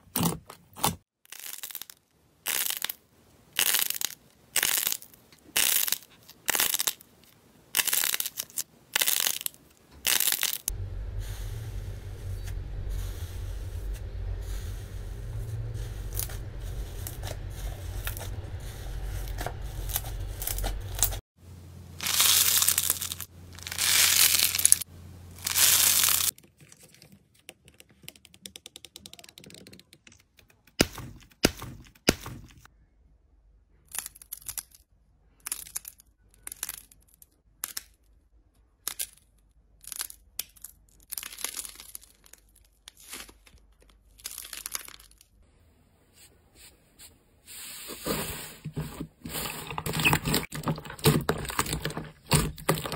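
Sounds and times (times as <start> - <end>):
low handling rumble: 10.7 - 22.0.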